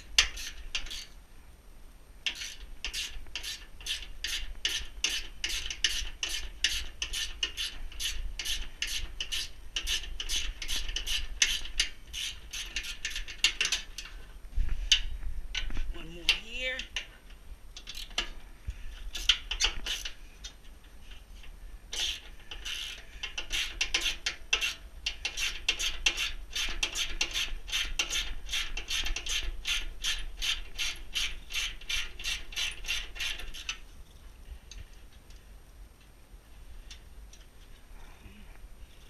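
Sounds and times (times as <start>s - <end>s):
ratchet wrench clicking: 17.8s - 18.2s, 22.0s - 33.8s.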